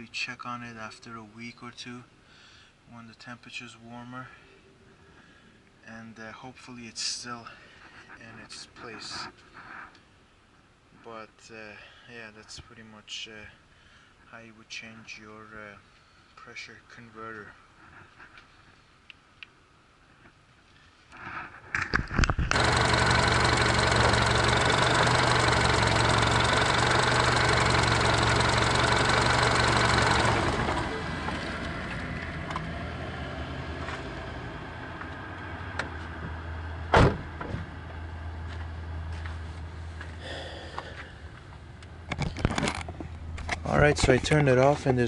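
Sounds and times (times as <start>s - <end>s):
car engine starting and idling: 22.5s - 37.4s.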